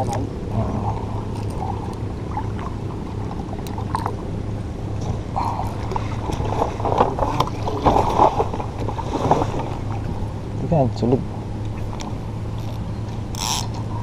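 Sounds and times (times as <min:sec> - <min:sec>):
small boat engine humming: 0:00.0 - 0:14.0
water and wind rushing: 0:00.0 - 0:14.0.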